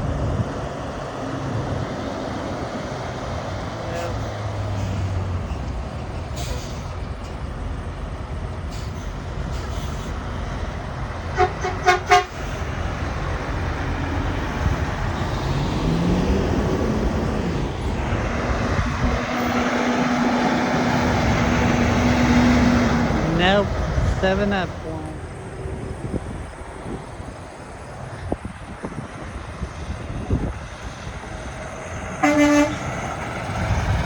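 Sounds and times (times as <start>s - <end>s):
truck engine revving: 0.0s - 34.0s
truck engines rumbling: 0.0s - 34.0s
truck horn honks: 3.8s - 4.4s, 11.3s - 12.6s, 19.2s - 20.3s, 32.1s - 33.1s.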